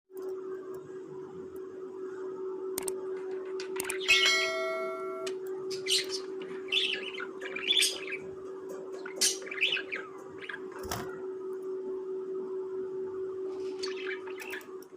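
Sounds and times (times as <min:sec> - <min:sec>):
steady hum: 0:00.1 - 0:14.9
held ringing tone: 0:04.0 - 0:07.8
budgerigars chirping: 0:04.1 - 0:08.3.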